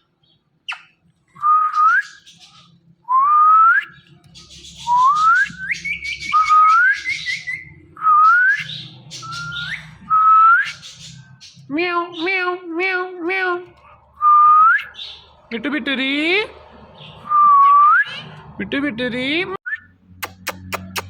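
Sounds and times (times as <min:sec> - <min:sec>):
parakeet whistling: 0:04.8 - 0:11.1.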